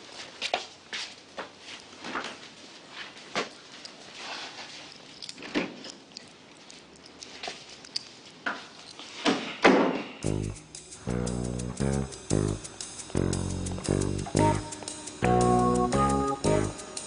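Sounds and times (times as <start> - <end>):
rustling: 0.0 - 9.5.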